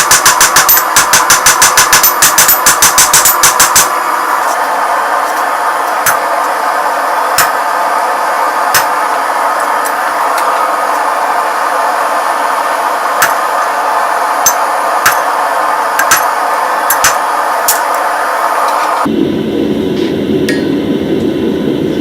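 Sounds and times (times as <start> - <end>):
hammer striking steel on anvil: 0.0 - 4.6, 5.2 - 6.6, 7.3 - 7.8, 8.6 - 11.3, 13.1 - 18.0, 20.5 - 20.8
steady rushing noise: 2.5 - 22.0.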